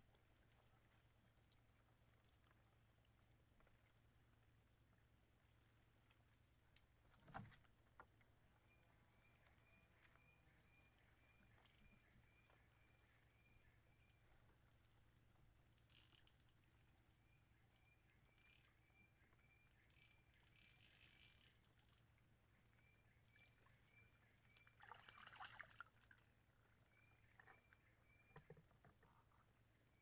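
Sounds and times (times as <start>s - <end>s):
faint repeating chirp: 8.6s - 14.3s, 17.2s - 21.6s.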